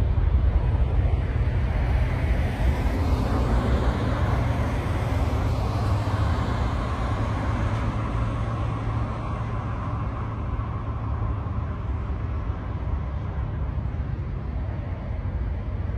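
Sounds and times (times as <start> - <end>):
airplane taking off: 0.0 - 15.9.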